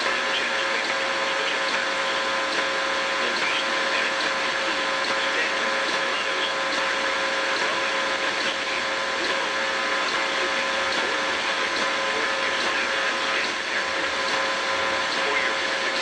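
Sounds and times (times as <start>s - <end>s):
radio static hiss: 0.0s - 16.0s.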